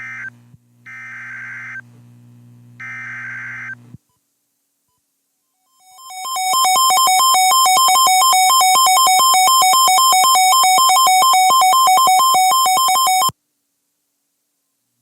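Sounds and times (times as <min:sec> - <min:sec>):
two-tone emergency alert signal: 0:05.8 - 0:13.3.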